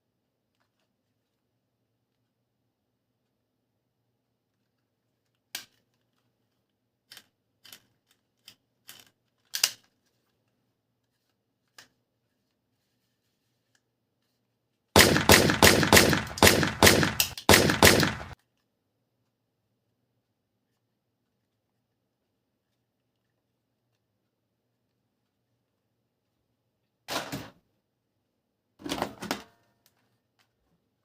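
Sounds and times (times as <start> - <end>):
toy gun firing bursts: 15.0 - 18.4.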